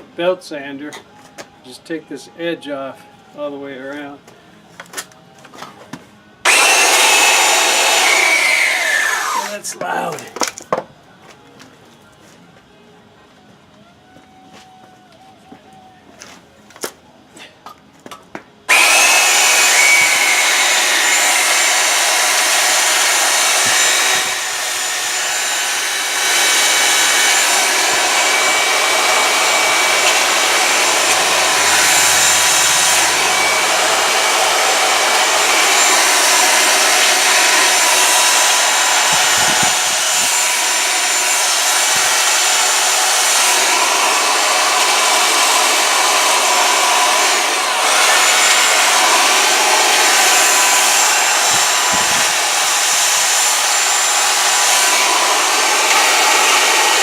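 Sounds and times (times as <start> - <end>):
belt sander sanding wood: 6.5 - 9.7, 18.7 - 57.0.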